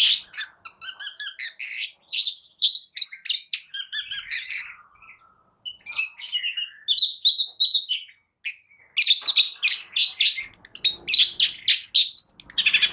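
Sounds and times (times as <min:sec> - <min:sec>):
bird chirping and whistling: 0:00.0 - 0:12.9
bird fast chatter: 0:09.1 - 0:12.9.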